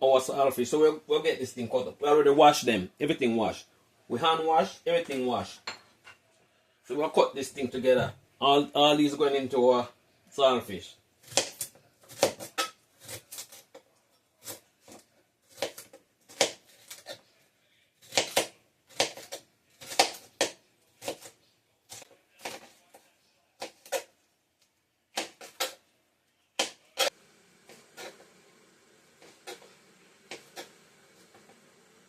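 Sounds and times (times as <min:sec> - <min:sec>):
knife chopping on cutting board: 0:11.2 - 0:13.6, 0:14.4 - 0:17.2, 0:18.0 - 0:23.0, 0:25.2 - 0:25.8, 0:26.6 - 0:27.1, 0:29.2 - 0:31.5.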